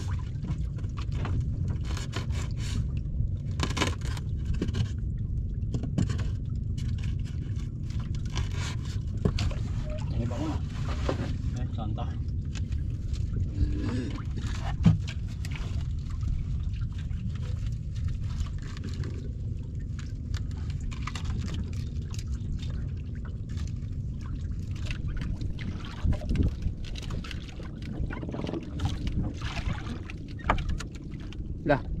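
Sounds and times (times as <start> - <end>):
low rumble: 0.0 - 32.0
water splashing around boat: 0.0 - 32.0
knocks on boat: 14.7 - 15.1.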